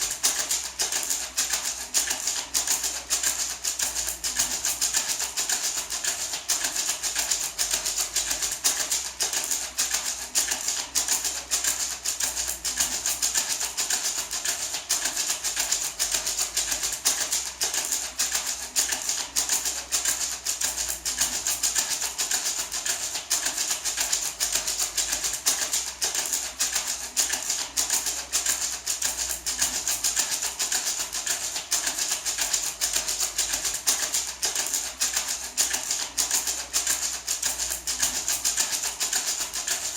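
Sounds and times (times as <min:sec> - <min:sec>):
maraca rattling: 0:00.0 - 0:39.9.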